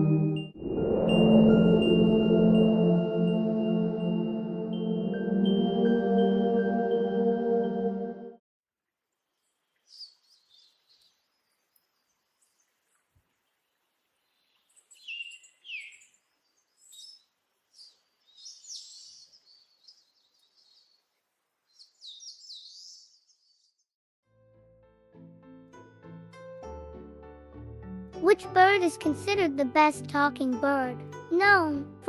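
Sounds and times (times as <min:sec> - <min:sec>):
songbird singing: 0:09.4 - 0:23.8.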